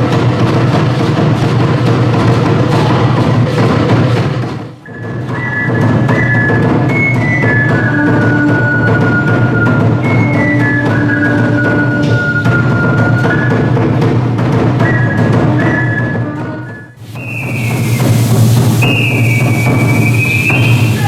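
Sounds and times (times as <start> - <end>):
busy drums and percussion: 0.0 - 21.0.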